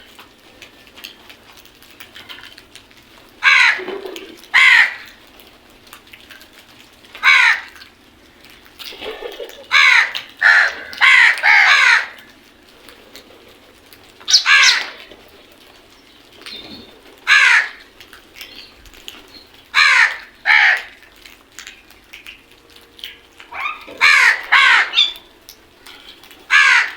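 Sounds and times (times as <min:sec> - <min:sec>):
softer lower crow calls: 0:03.4 - 0:03.9, 0:04.5 - 0:05.2, 0:07.2 - 0:07.9, 0:09.7 - 0:12.3, 0:14.3 - 0:15.1, 0:17.2 - 0:17.9, 0:19.7 - 0:21.1, 0:23.5 - 0:25.3, 0:26.5 - 0:26.9
crows cawing: 0:03.4 - 0:05.2, 0:07.2 - 0:07.9, 0:09.0 - 0:12.4, 0:14.3 - 0:15.1, 0:17.2 - 0:18.0, 0:19.7 - 0:21.2, 0:23.5 - 0:25.3, 0:25.9 - 0:26.9.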